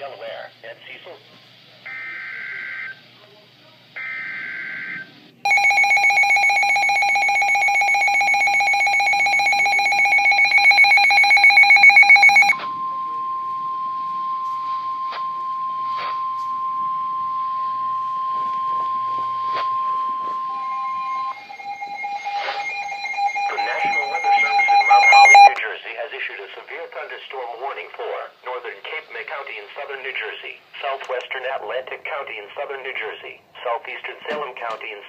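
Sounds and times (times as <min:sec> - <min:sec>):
steady warning alarm tone: 0:01.9 - 0:03.0, 0:04.0 - 0:25.6
pulsing buzzy alert tone: 0:18.4 - 0:25.6
warbling digital header burst: 0:20.4 - 0:25.6.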